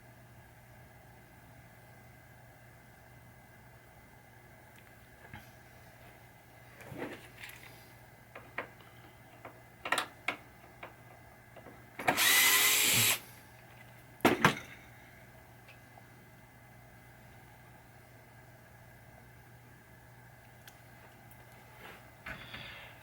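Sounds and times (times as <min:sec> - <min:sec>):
cordless drill driving screw: 0:12.0 - 0:13.2.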